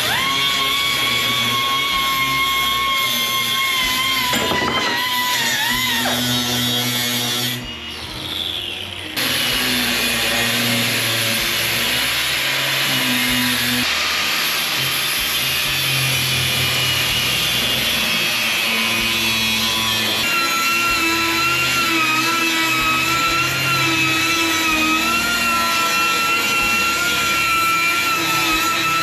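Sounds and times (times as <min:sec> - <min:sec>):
power tool high whine: 0:00.0 - 0:29.0
power tool hiss: 0:00.0 - 0:29.0.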